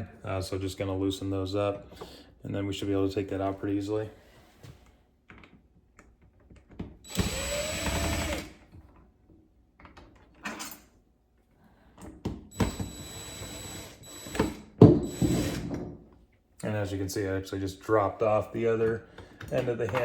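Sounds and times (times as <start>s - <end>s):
power drill whining: 7.1s - 8.6s, 12.5s - 15.7s
handling clicks and knocks: 18.8s - 20.0s.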